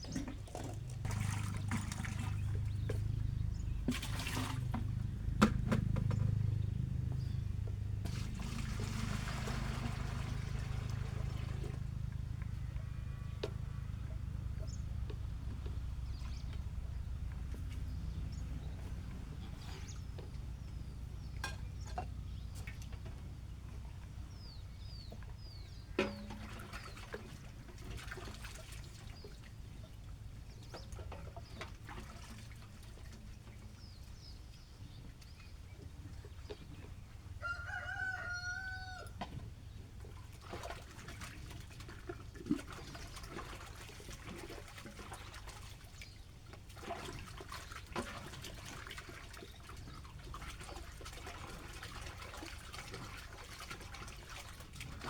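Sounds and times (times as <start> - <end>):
dishes clinking and splashing: 0.0 - 6.4, 21.2 - 22.8, 26.0 - 29.4, 40.4 - 55.0
small birds chirping: 1.5 - 3.9, 6.0 - 7.8, 14.0 - 26.0, 33.7 - 37.1
rooster crowing: 37.4 - 39.2.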